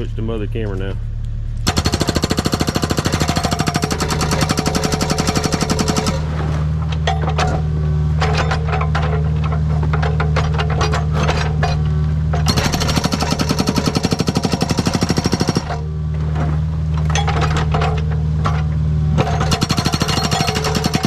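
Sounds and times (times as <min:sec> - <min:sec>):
diesel engine hum: 0:00.0 - 0:12.5
hydraulic breaker pounding rock: 0:01.6 - 0:21.0.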